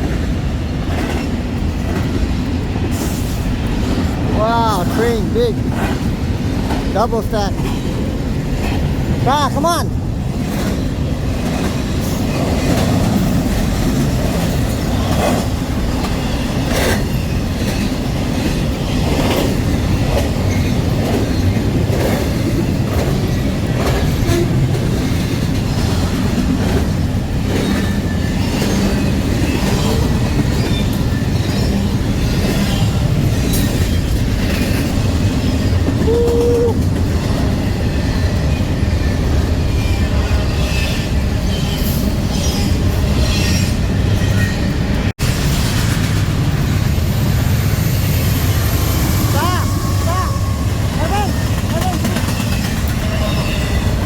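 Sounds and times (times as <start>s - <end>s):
freight train rumbling past: 0.0s - 54.0s
wheels clanking and clicking: 51.4s - 54.0s.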